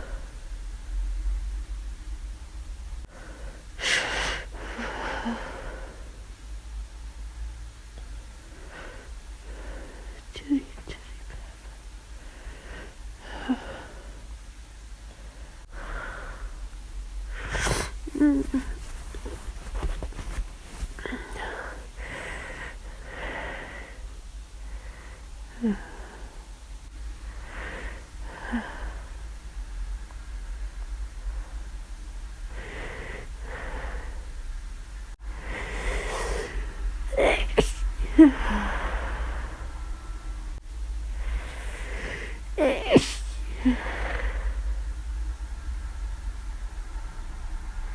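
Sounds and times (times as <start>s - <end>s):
breath drawn in: 17.3s - 24.0s, 35.4s - 36.7s
breathy hitching inhales: 17.3s - 26.5s, 35.3s - 40.2s, 41.2s - 44.6s
person sneezing: 17.4s - 19.9s, 35.8s - 38.7s, 42.6s - 44.0s
breathy exhale: 35.3s - 36.9s, 37.6s - 40.3s, 41.2s - 44.7s.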